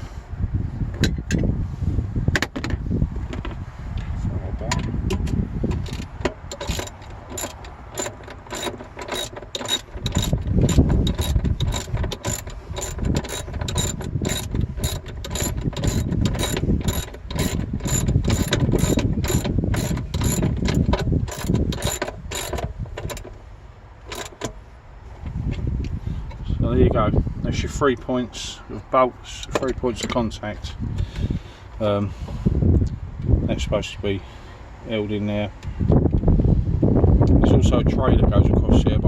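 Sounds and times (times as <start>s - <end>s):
low knocking and handling noise: 2.3s - 26.5s, 29.4s - 31.3s
ratcheting spanner clicking: 4.7s - 23.4s, 24.0s - 24.6s.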